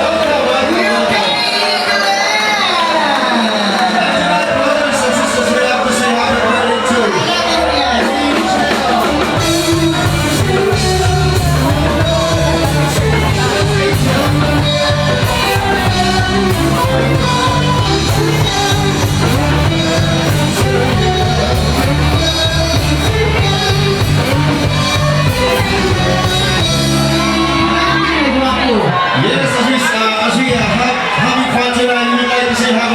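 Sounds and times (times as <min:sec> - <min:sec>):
person singing: 0:07.0 - 0:28.4
live rock band playing: 0:07.2 - 0:29.1.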